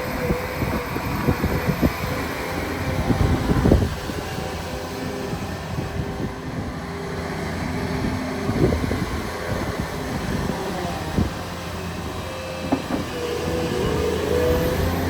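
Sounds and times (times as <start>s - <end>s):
excavator diesel engine running: 0.0s - 15.0s
sharp knocks: 12.6s - 13.2s.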